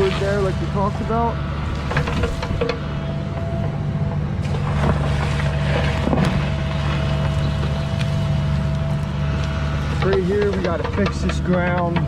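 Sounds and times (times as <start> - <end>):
excavator diesel engine running: 0.0 - 12.0
hydraulic whine: 0.0 - 12.0
knocks and scrapes: 1.7 - 2.9, 4.4 - 12.0.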